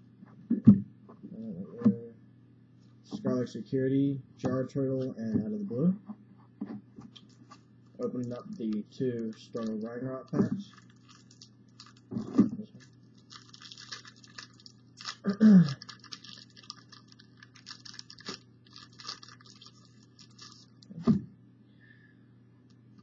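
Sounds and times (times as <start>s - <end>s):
wrappers crinkling and tearing: 7.2s - 21.0s.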